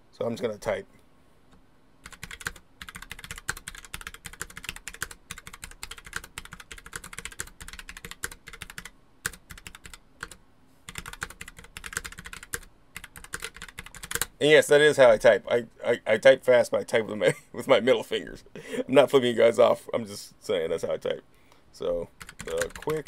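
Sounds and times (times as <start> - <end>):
fast typing on keyboard: 2.0 - 14.3, 22.2 - 23.0.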